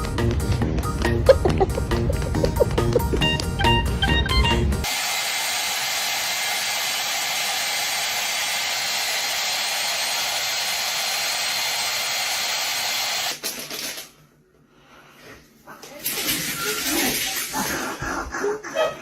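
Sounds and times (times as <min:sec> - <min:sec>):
loud rushing hiss: 0:04.9 - 0:13.3.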